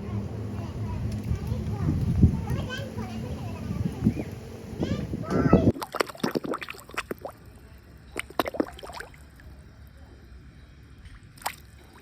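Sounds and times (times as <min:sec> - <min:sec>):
water splashing and dripping: 0:05.7 - 0:09.6, 0:11.0 - 0:12.0.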